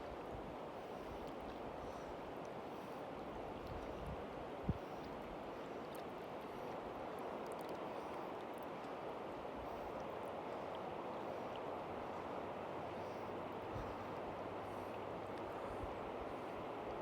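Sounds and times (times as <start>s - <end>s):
river water rushing: 0.0s - 17.0s.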